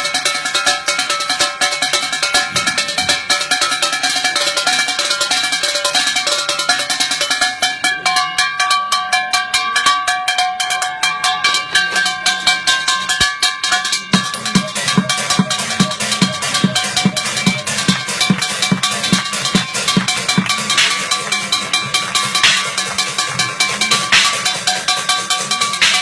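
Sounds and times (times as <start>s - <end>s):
fast drumming: 0.0s - 26.0s
ringing metallic tones: 0.0s - 26.0s
deep drum beats: 14.0s - 26.0s.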